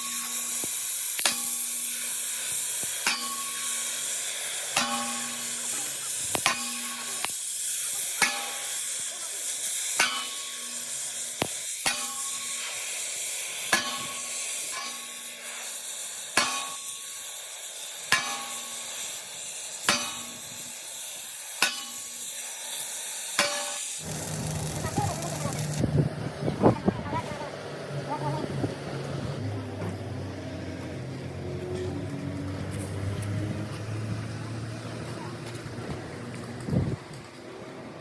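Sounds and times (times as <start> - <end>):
arc welding sizzle: 0.0 - 26.0.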